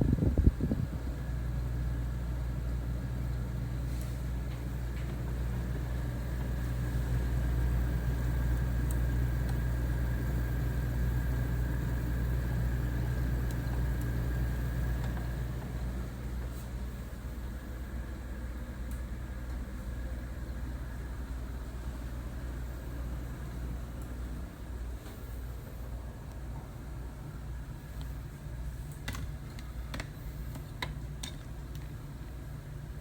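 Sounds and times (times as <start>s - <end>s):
air conditioner fan hum: 0.0s - 33.0s.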